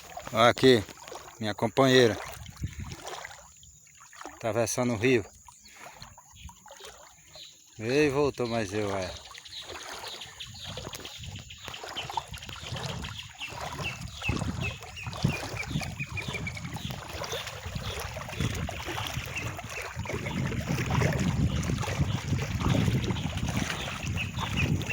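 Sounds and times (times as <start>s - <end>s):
wind buffeting the microphone: 2.0s - 3.2s, 8.0s - 24.9s.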